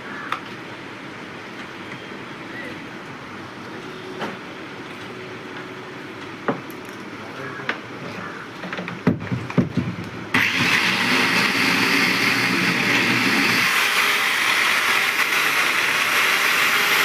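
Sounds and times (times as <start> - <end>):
electric grinder whirring: 10.4 - 17.0.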